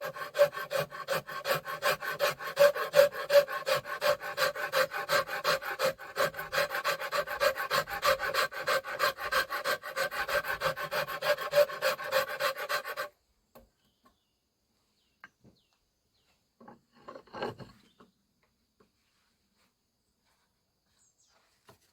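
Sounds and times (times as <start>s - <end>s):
rasp scraping wood with squeal: 0.0s - 13.1s.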